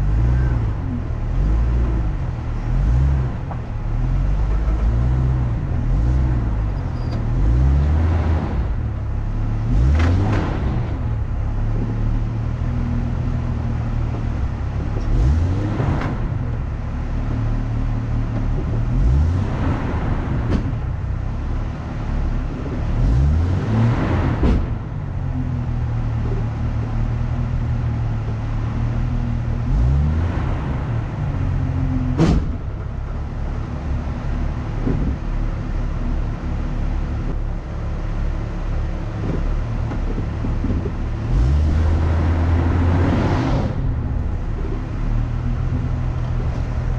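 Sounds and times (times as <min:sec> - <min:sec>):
vehicle engine revving: 0:00.0 - 0:46.9
sharp knock: 0:32.2 - 0:32.6.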